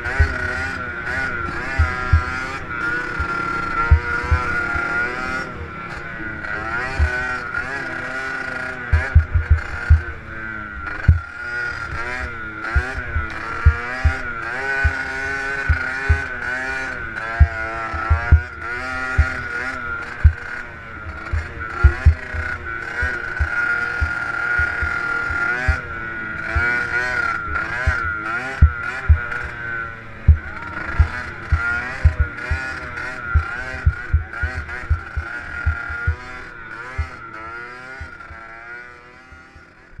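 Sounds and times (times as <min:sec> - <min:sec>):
dirt bike engine revving: 0:00.0 - 0:40.0
low thumps: 0:01.6 - 0:02.6, 0:08.9 - 0:10.2, 0:10.8 - 0:11.3, 0:11.9 - 0:16.4, 0:17.0 - 0:19.5, 0:21.3 - 0:25.9, 0:27.4 - 0:29.4, 0:30.2 - 0:36.2.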